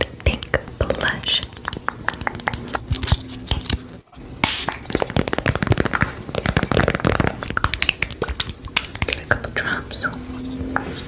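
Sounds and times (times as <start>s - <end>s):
dense crackling: 0.0s - 9.5s.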